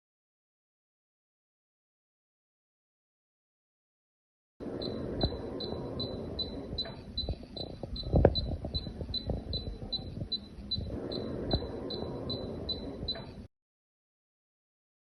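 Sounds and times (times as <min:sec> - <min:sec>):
air conditioner beeping: 0:04.6 - 0:13.5.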